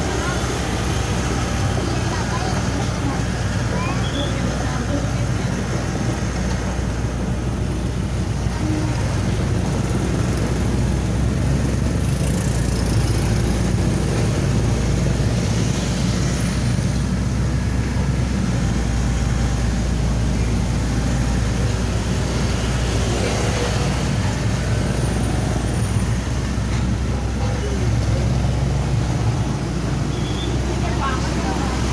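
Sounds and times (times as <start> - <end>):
excavator diesel engines running: 0.0 - 31.9.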